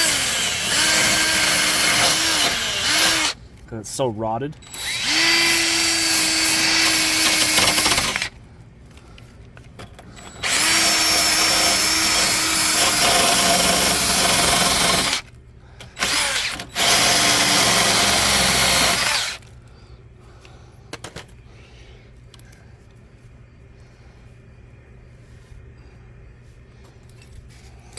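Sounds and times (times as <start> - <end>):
power wire brush scrubbing metal: 0.0 - 3.4.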